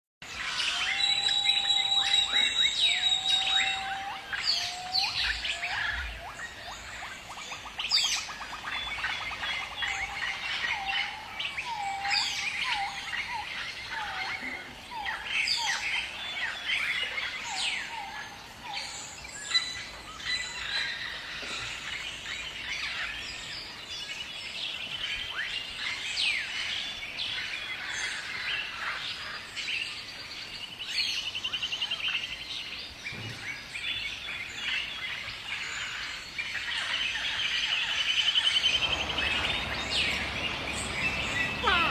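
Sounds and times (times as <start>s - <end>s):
whistled bird notes: 0.3s - 23.0s, 35.8s - 41.9s
downward-sweeping bird chirps: 0.4s - 22.9s, 36.5s - 41.9s.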